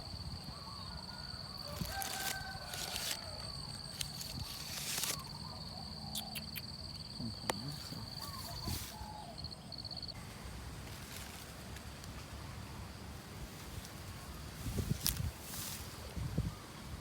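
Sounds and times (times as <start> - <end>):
cricket trilling: 0.0 - 13.3.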